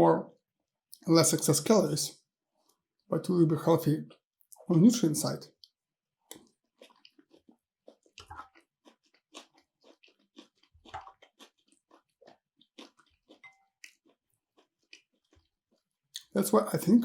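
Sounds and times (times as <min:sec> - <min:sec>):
person chewing food: 0:05.5 - 0:16.3.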